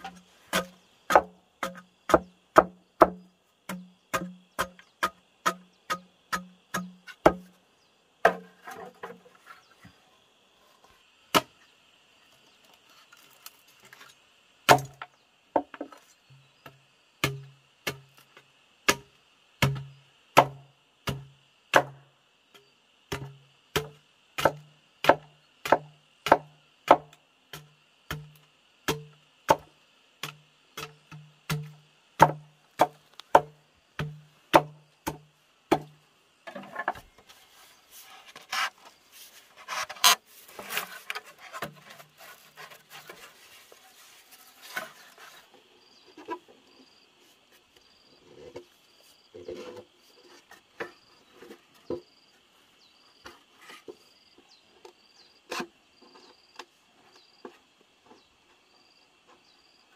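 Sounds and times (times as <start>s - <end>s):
wood being chopped: 0.0s - 7.5s, 8.2s - 9.1s, 11.3s - 11.6s, 14.7s - 15.9s, 16.6s - 18.2s, 18.9s - 22.0s, 23.1s - 36.0s.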